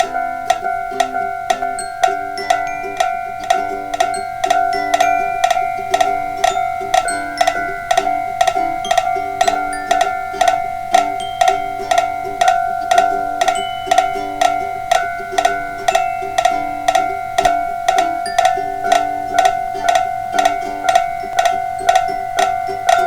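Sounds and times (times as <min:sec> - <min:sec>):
railroad crossing bells clanging: 0:00.0 - 0:23.0.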